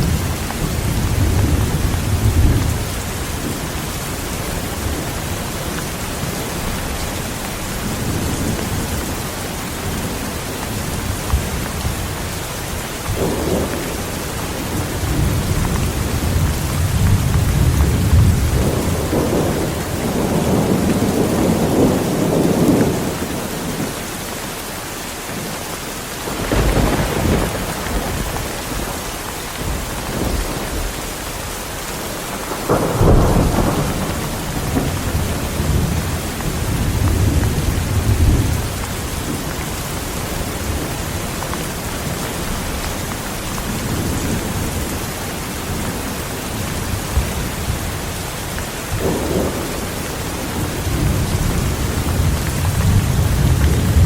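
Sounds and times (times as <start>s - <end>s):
heavy rain: 0.0s - 54.0s
thunder rumbling: 13.1s - 24.0s, 26.3s - 54.0s.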